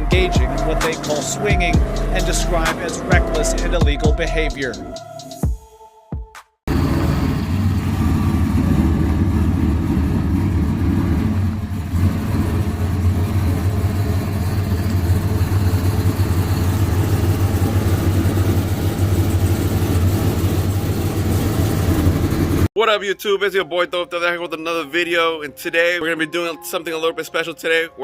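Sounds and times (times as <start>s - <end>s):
vehicle engine running: 0.0s - 4.9s, 6.7s - 22.7s.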